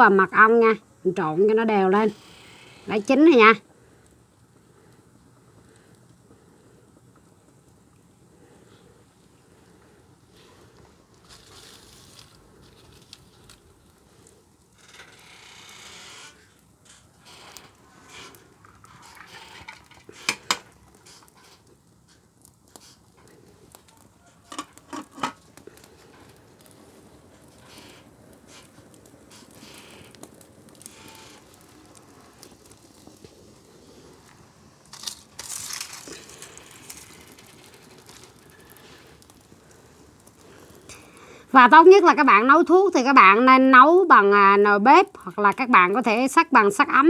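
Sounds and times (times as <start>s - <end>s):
soft rustling: 0.8s - 43.4s.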